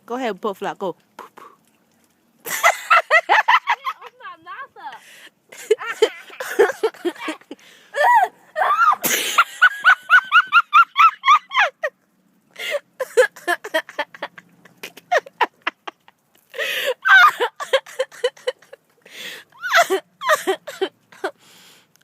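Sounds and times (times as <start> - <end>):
people laughing: 5.6 - 8.2.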